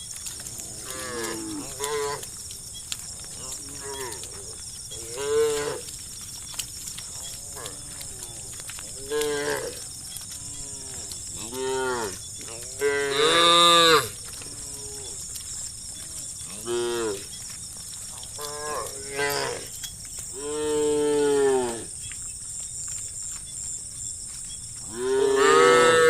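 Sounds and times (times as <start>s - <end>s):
cows mooing: 0.5s - 2.3s, 3.3s - 6.0s, 7.0s - 15.3s, 16.0s - 17.4s, 18.2s - 19.7s, 20.3s - 21.9s, 24.8s - 26.0s.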